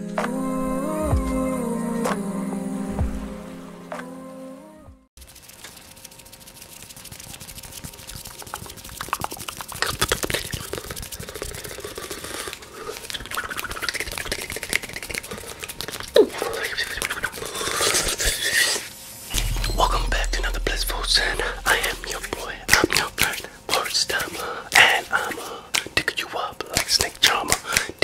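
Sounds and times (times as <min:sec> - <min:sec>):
rapid clicking and crackling: 0:05.2 - 0:16.2.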